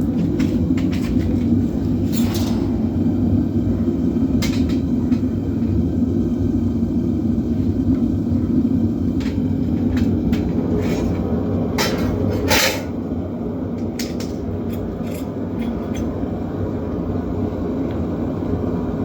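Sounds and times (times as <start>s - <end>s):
knocks and clatters: 0.0s - 3.7s, 4.3s - 5.3s
furnace low rumble: 0.0s - 19.0s.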